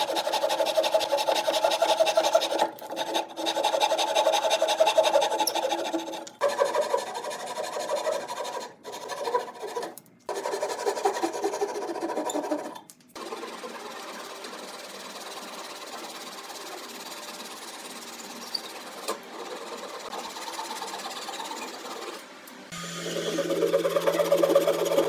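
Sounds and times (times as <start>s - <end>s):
small power tool running: 13.2s - 25.0s.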